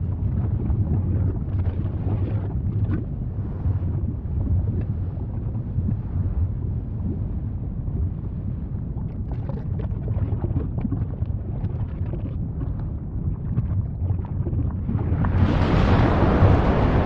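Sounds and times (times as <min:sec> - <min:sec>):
volcano rumbling: 0:00.0 - 0:17.0
crackles and pops: 0:09.0 - 0:16.0.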